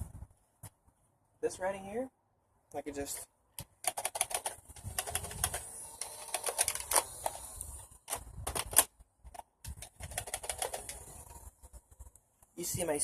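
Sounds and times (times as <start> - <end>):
plastic toy blasters clicking: 3.8 - 8.9, 9.6 - 11.0.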